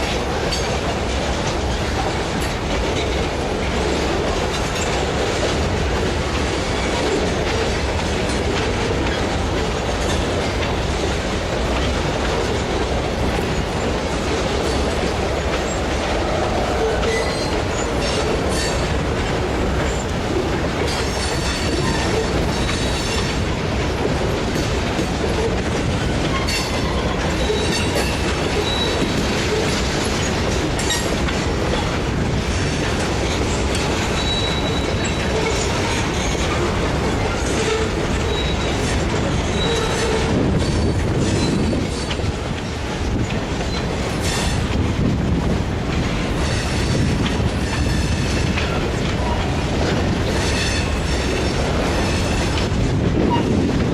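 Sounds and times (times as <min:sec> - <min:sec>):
train rumbling on rails: 0:00.0 - 0:53.9.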